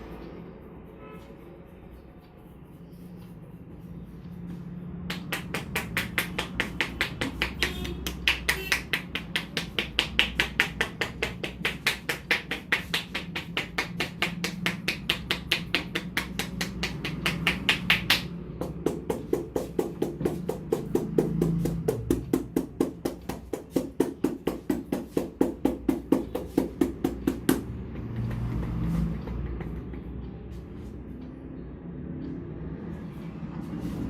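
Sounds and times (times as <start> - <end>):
hands tapping rapidly on head: 5.0 - 30.2.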